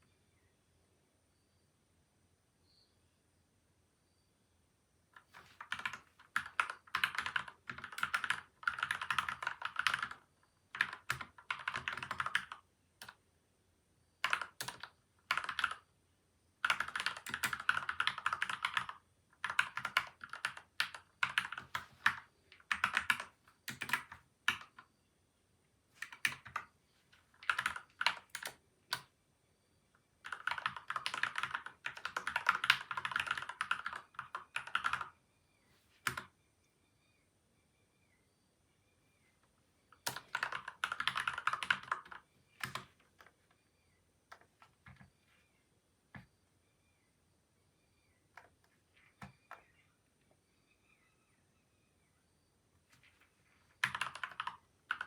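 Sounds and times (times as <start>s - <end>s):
mechanical keyboard typing: 5.2s - 13.2s, 14.2s - 15.8s, 16.6s - 24.9s, 26.0s - 26.7s, 27.3s - 29.1s, 30.2s - 35.1s, 36.0s - 36.3s, 40.0s - 43.3s, 53.8s - 55.0s.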